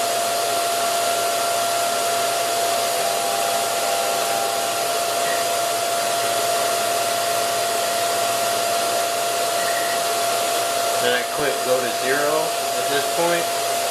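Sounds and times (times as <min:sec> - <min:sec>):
motor whooshing and whining: 0:00.0 - 0:11.0.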